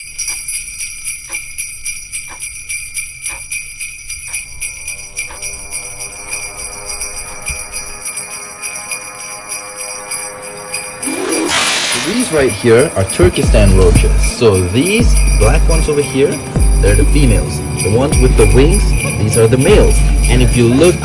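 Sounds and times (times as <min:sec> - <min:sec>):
jingle bells shaken: 0:00.0 - 0:21.0
sustained chord: 0:05.1 - 0:14.5
light beat: 0:11.9 - 0:21.0.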